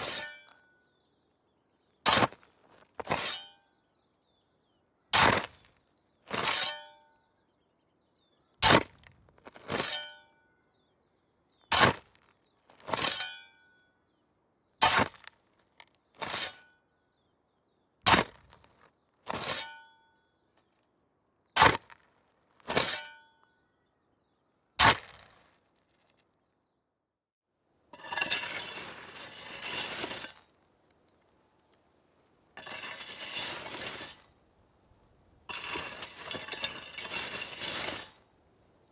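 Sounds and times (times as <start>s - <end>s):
spade scraping soil: 0.0s - 0.6s, 2.1s - 3.6s, 5.2s - 5.7s, 6.3s - 6.9s, 8.6s - 10.2s, 11.7s - 13.4s, 14.8s - 15.4s, 16.2s - 16.7s, 18.1s - 19.9s, 21.6s - 22.0s, 22.6s - 23.2s, 24.8s - 25.4s, 28.0s - 30.7s, 32.6s - 34.4s, 35.5s - 38.3s
spade striking ground: 0.0s - 0.6s, 2.1s - 3.6s, 5.2s - 5.7s, 6.3s - 7.0s, 8.6s - 10.2s, 11.7s - 12.2s, 12.8s - 13.5s, 14.8s - 15.4s, 16.2s - 16.7s, 18.1s - 19.9s, 21.6s - 22.0s, 22.7s - 23.3s, 24.8s - 25.4s, 28.0s - 30.7s, 32.6s - 34.4s, 35.5s - 38.3s.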